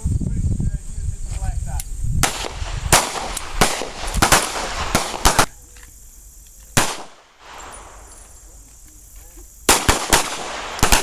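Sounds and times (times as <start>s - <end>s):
pistol shots: 2.2s - 5.6s, 6.8s - 8.2s, 9.7s - 11.0s.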